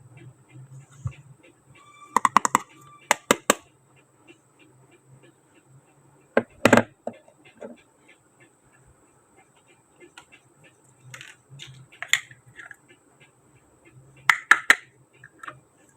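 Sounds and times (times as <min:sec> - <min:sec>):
plastic toy pieces clicking: 0:11.1 - 0:12.8, 0:14.3 - 0:15.6.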